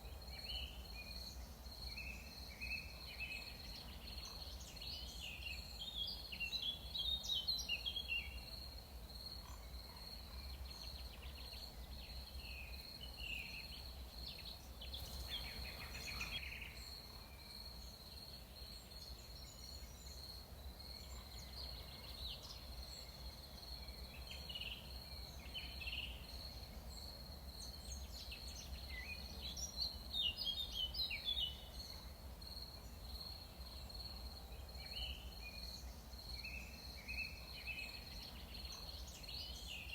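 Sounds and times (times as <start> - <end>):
birds chirping: 15.0 - 16.5
insects trilling: 15.0 - 16.5.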